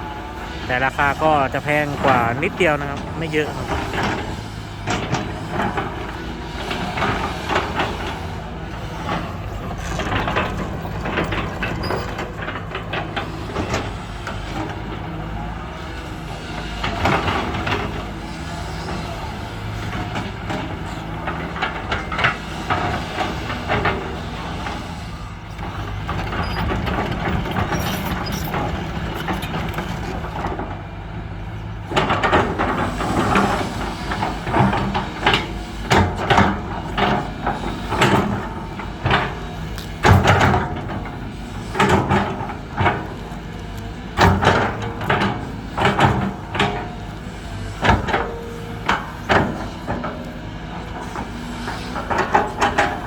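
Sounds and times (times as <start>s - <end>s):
truck engine running: 0.0s - 53.0s
clattering knocks and rattles: 4.9s - 15.0s, 31.7s - 53.0s.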